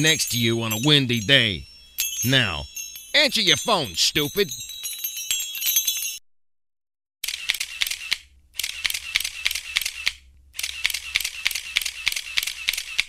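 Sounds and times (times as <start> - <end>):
chiming ringtone: 0.0 - 6.2
rapid camera shutter clicks: 7.2 - 13.0.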